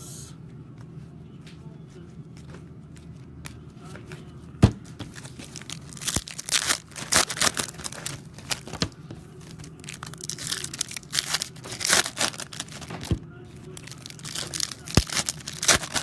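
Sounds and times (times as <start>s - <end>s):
foil wrapper crinkling and tearing: 5.2s - 16.0s.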